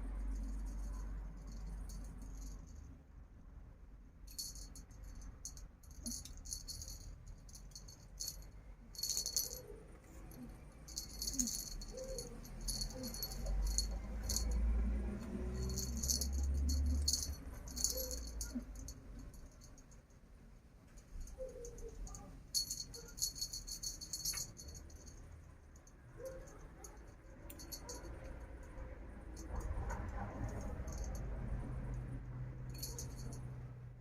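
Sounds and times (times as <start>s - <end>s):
rattle toy jingling: 0.2s - 2.9s, 4.3s - 20.0s, 21.0s - 32.0s, 32.7s - 33.6s.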